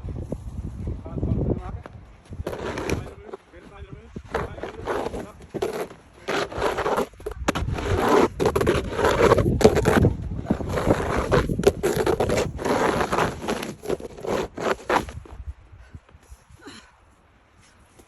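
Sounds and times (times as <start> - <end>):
snow shovel scraping pavement: 2.4 - 15.3.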